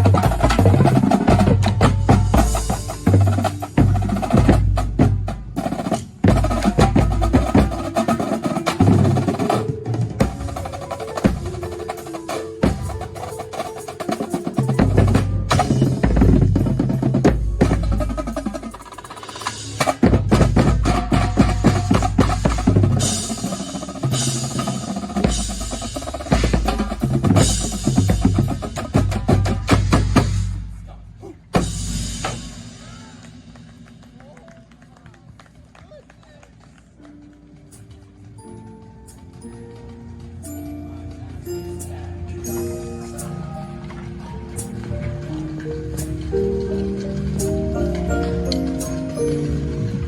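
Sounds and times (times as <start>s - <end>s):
marching drums: 0.0s - 36.5s.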